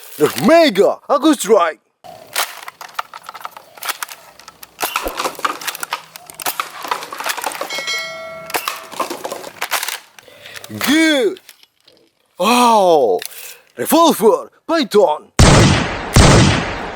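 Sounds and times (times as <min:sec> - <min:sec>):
plastic toy blasters clicking: 0:02.4 - 0:07.6.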